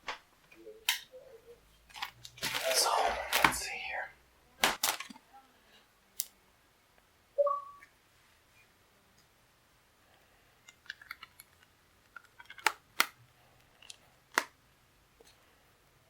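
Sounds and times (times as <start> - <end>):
phone case clicks and scrapes: 10.7 - 13.2.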